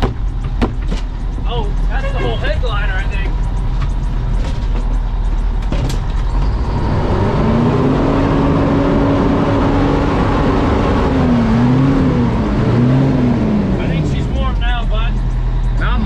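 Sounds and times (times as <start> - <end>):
truck engine revving under load: 3.3 - 16.0.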